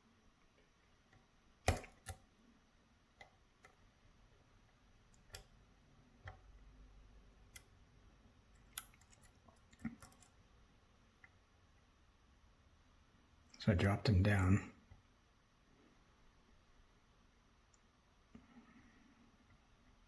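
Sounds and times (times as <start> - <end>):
lock pick metallic clicks: 1.6 - 2.2.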